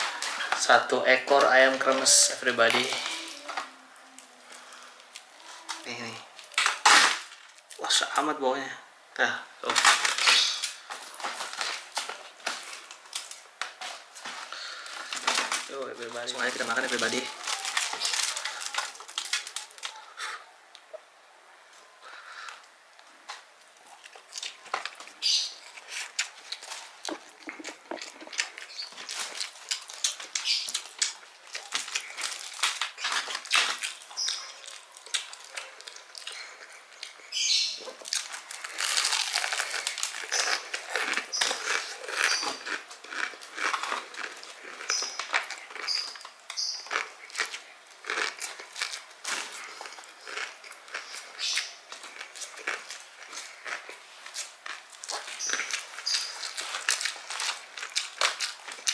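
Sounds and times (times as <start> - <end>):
person chewing crispy fried chicken: 10.0 - 20.4, 23.3 - 58.9.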